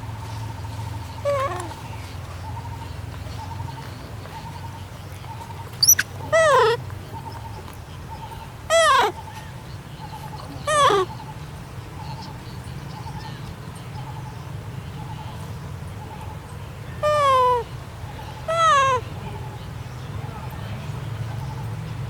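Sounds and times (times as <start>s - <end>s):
baby monkey chirp: 1.1s - 1.8s, 5.4s - 7.6s, 8.7s - 9.2s, 10.3s - 11.2s, 17.0s - 17.7s, 18.5s - 19.0s
baby monkey whimpering calls: 1.2s - 1.8s, 5.8s - 6.8s, 8.7s - 9.2s, 10.5s - 11.2s, 17.0s - 17.7s, 18.5s - 19.0s.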